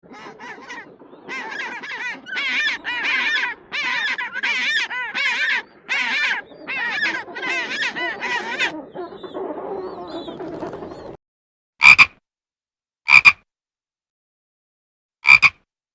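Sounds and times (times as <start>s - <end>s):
flock of birds calling: 0.0s - 11.2s.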